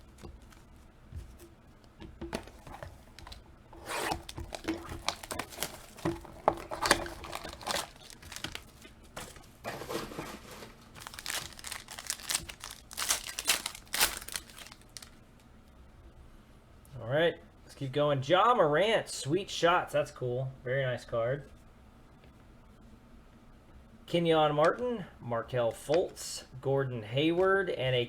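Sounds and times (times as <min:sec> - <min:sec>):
card packaging tearing and crinkling: 0:02.4 - 0:15.1.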